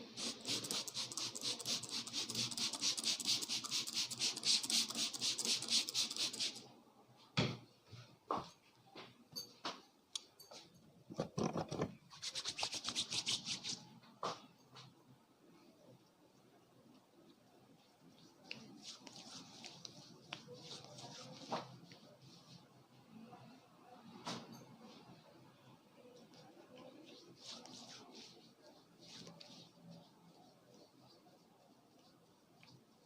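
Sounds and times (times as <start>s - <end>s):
hands rubbing hair: 0.1s - 6.6s, 12.1s - 13.9s, 17.8s - 22.6s, 26.3s - 32.9s.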